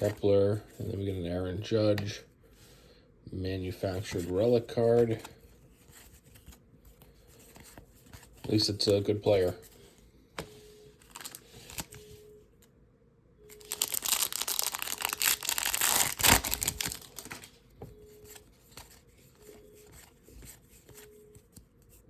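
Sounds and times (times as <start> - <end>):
foil wrapper tearing and crinkling: 11.1 - 11.9, 13.6 - 17.5.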